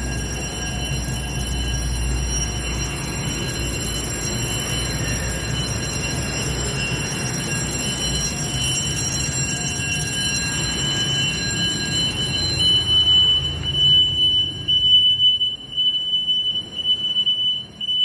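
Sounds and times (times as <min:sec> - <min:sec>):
fire alarm ringing: 0:00.0 - 0:18.0.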